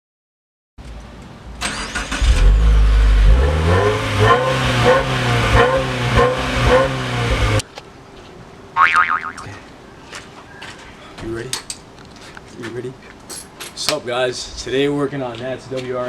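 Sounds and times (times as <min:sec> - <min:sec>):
car engine revving: 0:01.6 - 0:07.6.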